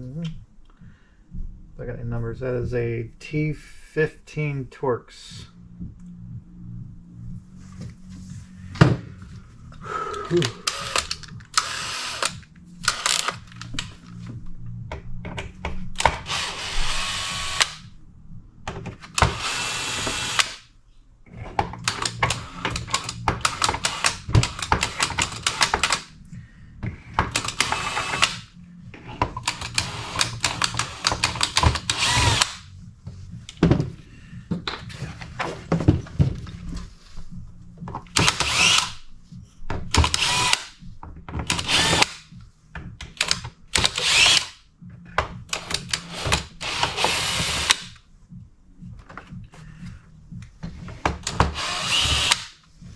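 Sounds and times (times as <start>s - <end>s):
power driver removing screws: 10.4s - 13.9s, 16.0s - 17.8s, 19.0s - 20.6s, 21.7s - 26.1s, 27.1s - 28.5s, 29.2s - 32.6s, 38.1s - 39.0s, 39.9s - 40.8s, 41.4s - 42.2s, 43.1s - 44.6s, 45.6s - 47.9s, 51.2s - 52.6s.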